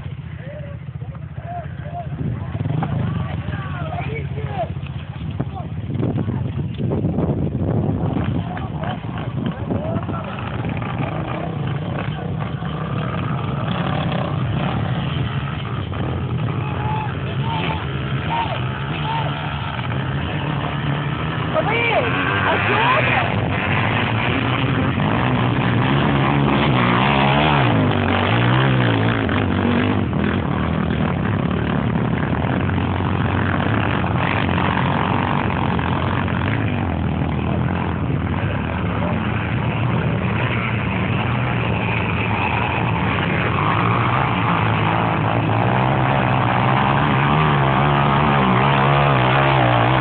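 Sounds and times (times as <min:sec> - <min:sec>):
engine working hard under load: 0:00.0 - 0:50.0.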